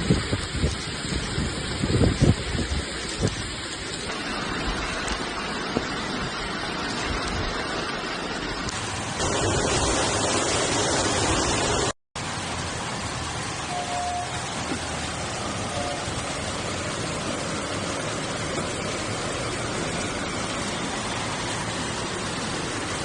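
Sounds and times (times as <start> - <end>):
floodwater rushing: 0.0 - 23.0
heavy rain: 0.0 - 23.0.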